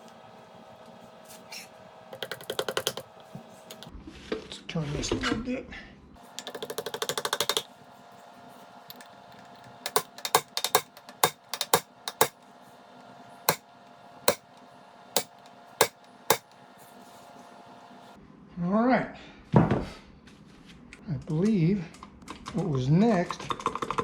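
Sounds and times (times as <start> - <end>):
fast run of gear clicks: 2.1 - 3.9, 6.3 - 7.7, 8.9 - 12.4, 14.3 - 14.6
sharp metal taps: 9.9 - 12.4, 15.2 - 16.4.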